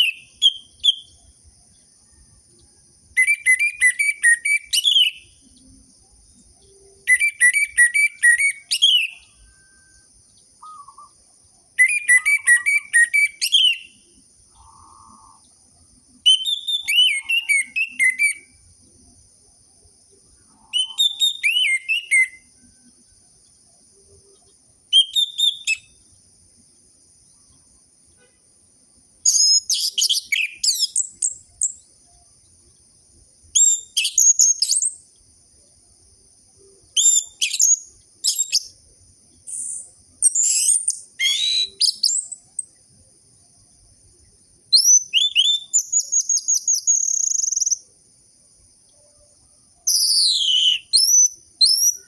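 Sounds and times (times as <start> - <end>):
thrush singing whistled notes: 0.0 - 19.2, 20.2 - 26.1, 29.2 - 32.6, 33.4 - 35.0, 36.5 - 42.8, 44.7 - 47.9, 48.9 - 52.0
faint high-pitched tone: 9.2 - 10.3.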